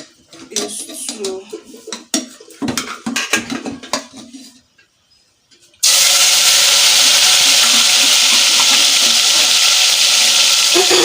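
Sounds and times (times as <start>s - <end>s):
hot oil sizzling in a pot: 5.8s - 11.0s.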